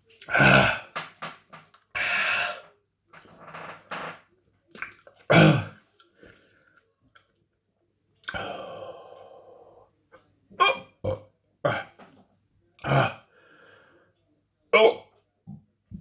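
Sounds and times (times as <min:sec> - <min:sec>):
man burping: 0:00.2 - 0:00.9, 0:05.3 - 0:05.8, 0:10.6 - 0:12.0, 0:12.8 - 0:13.3
man hiccuping: 0:10.6 - 0:12.0, 0:14.8 - 0:15.1.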